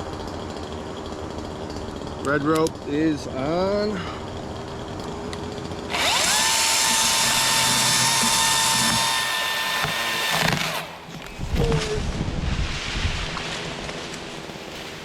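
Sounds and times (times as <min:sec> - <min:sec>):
electric chainsaw whining: 0:00.0 - 0:11.3.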